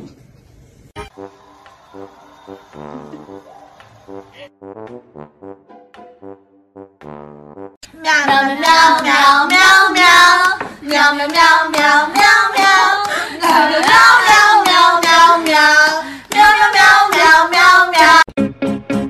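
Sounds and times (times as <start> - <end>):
high-pitched singing voice: 7.9 - 18.4.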